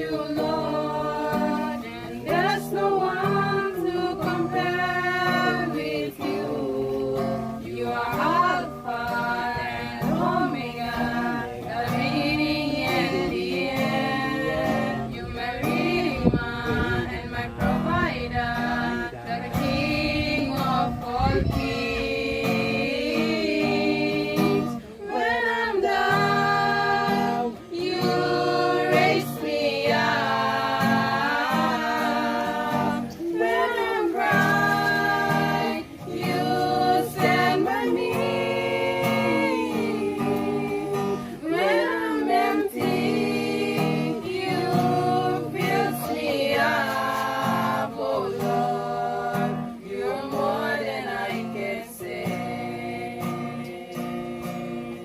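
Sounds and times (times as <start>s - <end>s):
voices singing worship song: 0.0s - 55.0s.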